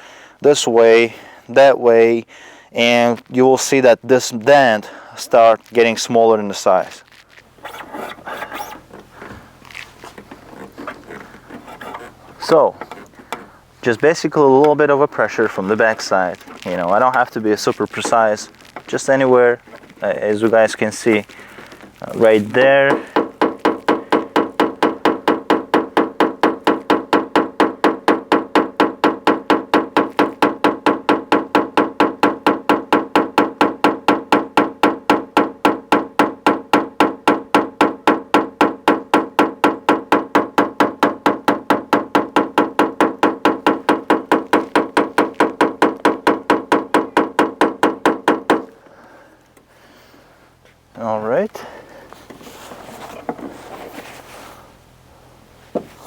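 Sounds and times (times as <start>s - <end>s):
hammer tapping on sheet metal: 22.9s - 48.7s.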